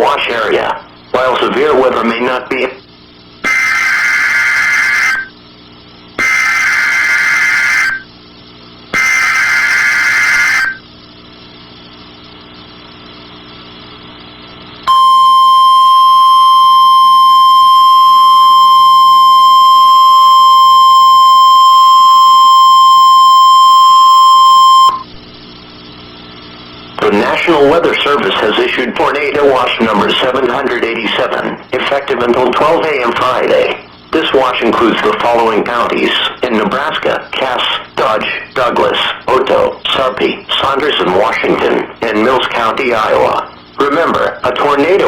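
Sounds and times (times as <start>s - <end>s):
steady warning alarm tone: 3.4s - 5.4s, 6.2s - 8.1s, 9.0s - 10.8s, 14.9s - 25.1s
warbling digital data screech: 3.4s - 5.4s, 6.2s - 8.1s, 9.0s - 10.8s, 24.5s - 25.1s.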